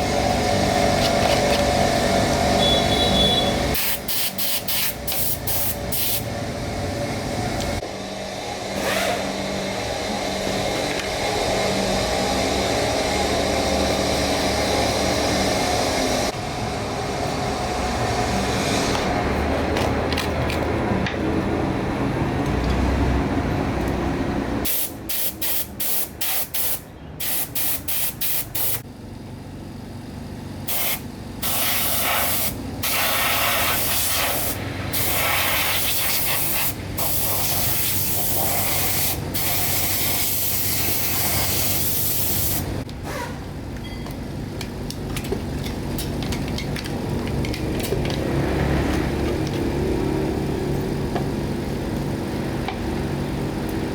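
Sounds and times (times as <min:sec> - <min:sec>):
hissing sprays: 0:03.7 - 0:06.2, 0:30.7 - 0:42.8.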